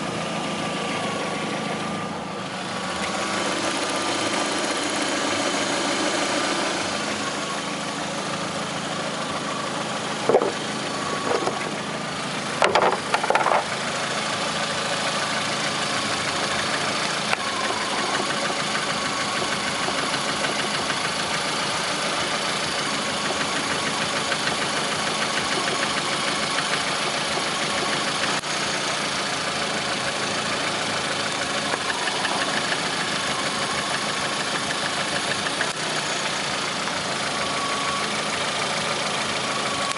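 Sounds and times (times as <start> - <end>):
car engine idling with knock: 0.0 - 39.9.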